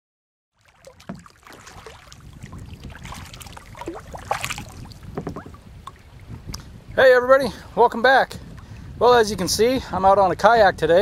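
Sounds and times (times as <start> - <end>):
paddle splashing water: 0.5 - 6.5
water gurgling along hull: 0.5 - 11.0.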